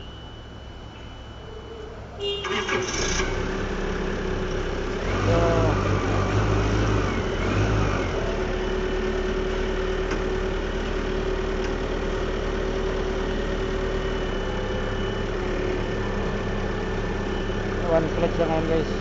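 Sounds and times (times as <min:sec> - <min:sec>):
constant whine: 0:00.0 - 0:19.0
diesel engine idling: 0:00.0 - 0:19.0.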